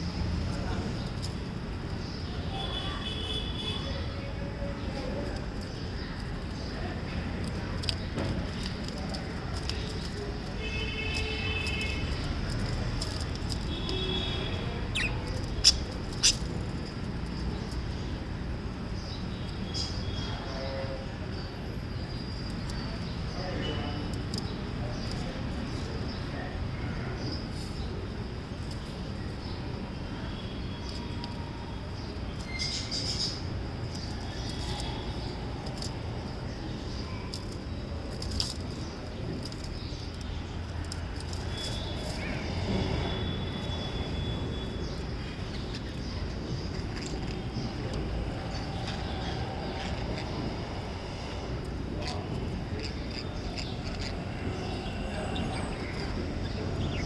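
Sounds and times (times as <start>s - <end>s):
low background noise: 0.0s - 57.0s
parrots chirping: 14.2s - 18.2s, 43.2s - 51.4s, 52.0s - 57.0s.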